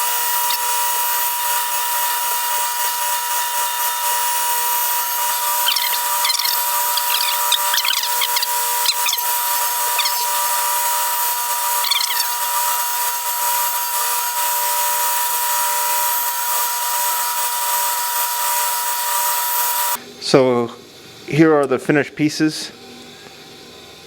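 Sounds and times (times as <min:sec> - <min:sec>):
surface grinder grinding steel: 0:00.0 - 0:17.7.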